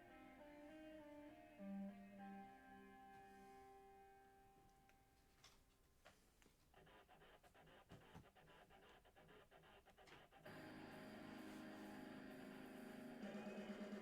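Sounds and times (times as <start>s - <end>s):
background music: 0.0s - 5.1s, 10.4s - 14.0s.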